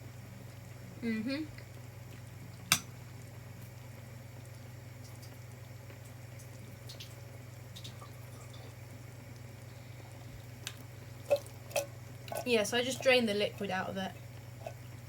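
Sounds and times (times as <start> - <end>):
steady low hum: 0.0 - 15.0
liquid dripping: 4.4 - 9.6.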